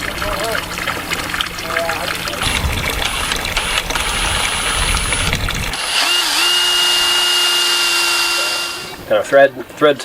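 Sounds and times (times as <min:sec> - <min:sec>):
low rumbling: 0:02.4 - 0:09.1
power drill running: 0:02.4 - 0:09.1.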